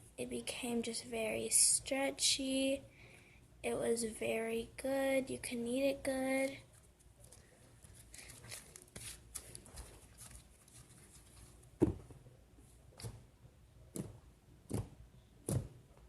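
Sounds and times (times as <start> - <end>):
slime sticky crackling: 6.4 - 11.6.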